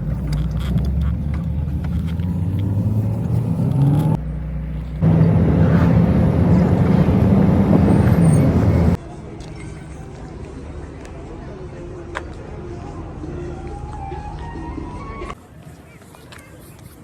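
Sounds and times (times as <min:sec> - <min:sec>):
car engine and road noise: 0:00.0 - 0:09.0.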